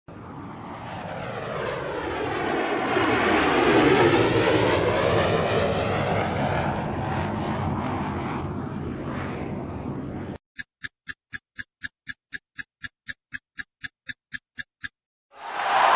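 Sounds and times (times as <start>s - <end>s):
airplane flying overhead: 0.1s - 10.4s.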